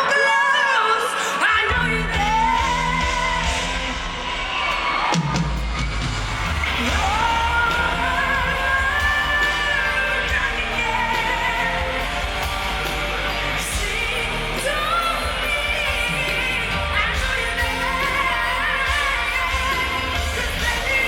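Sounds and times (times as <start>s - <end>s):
pop ballad: 0.0s - 21.0s
steady bass: 5.6s - 21.0s.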